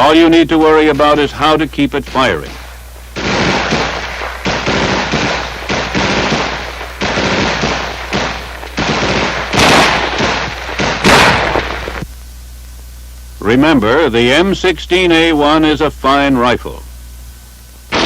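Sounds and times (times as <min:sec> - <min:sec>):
rifles firing automatic bursts: 0:02.0 - 0:12.0.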